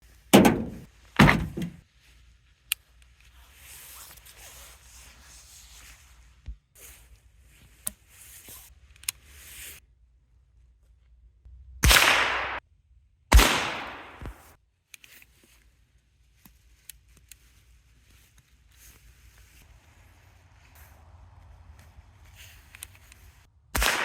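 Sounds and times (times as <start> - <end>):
rifle shots: 11.8 - 12.6, 13.3 - 14.5, 23.8 - 24.0.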